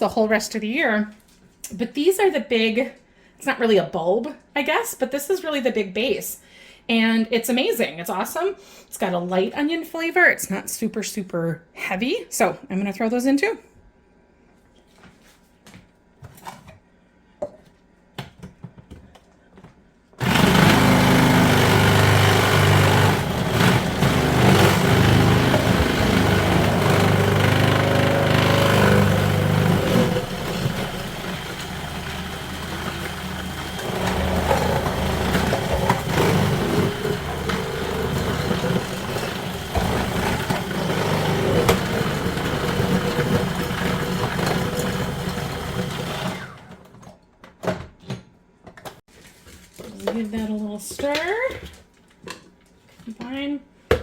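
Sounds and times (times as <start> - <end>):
kitchen machine motor shredding: 20.2 - 47.1.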